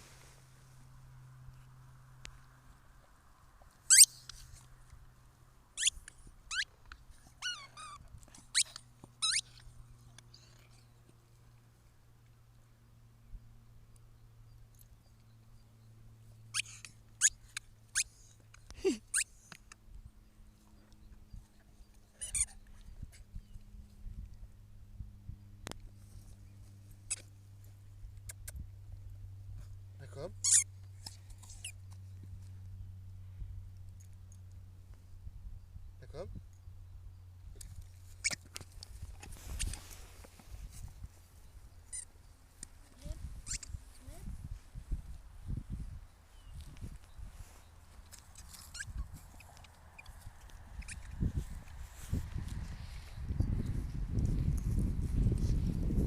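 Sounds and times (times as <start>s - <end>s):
squeaky toy ball squeaks: 3.9s - 4.2s, 5.8s - 6.7s, 7.4s - 9.6s, 16.5s - 18.1s, 22.2s - 22.6s, 30.4s - 31.8s, 38.2s - 38.6s, 43.0s - 43.8s, 48.3s - 50.2s, 50.8s - 51.2s.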